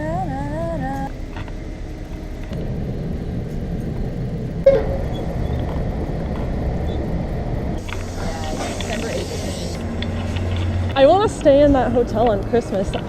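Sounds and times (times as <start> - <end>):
person humming: 0.0 - 1.1
vehicle rumble: 0.0 - 13.0.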